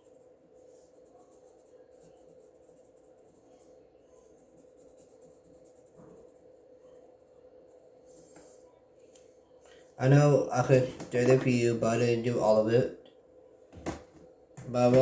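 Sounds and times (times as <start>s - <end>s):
coloring tool scratching paper: 0.0s - 6.6s.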